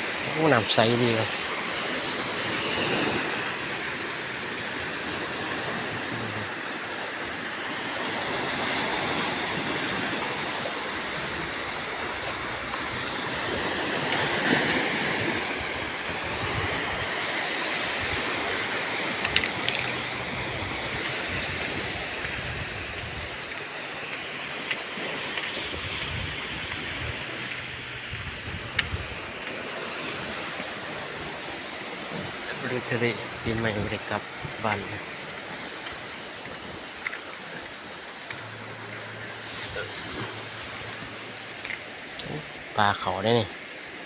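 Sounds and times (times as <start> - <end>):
sea waves washing ashore: 0.0 - 44.0.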